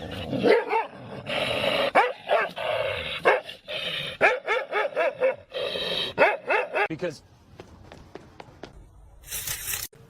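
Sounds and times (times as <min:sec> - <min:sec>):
dog barking: 0:00.4 - 0:01.0, 0:01.9 - 0:02.6, 0:04.2 - 0:05.5, 0:06.2 - 0:06.9.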